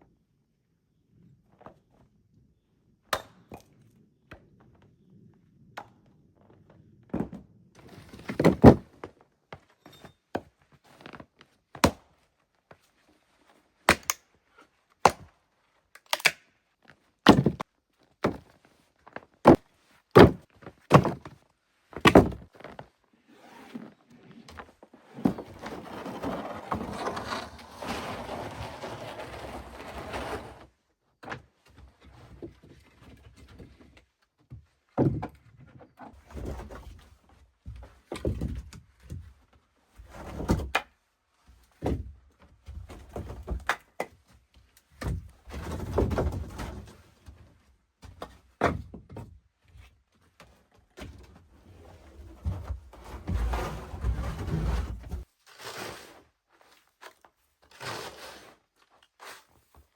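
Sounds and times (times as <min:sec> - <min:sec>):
steady rustling or scraping: 0:23.3 - 0:30.8, 0:51.4 - 0:59.8.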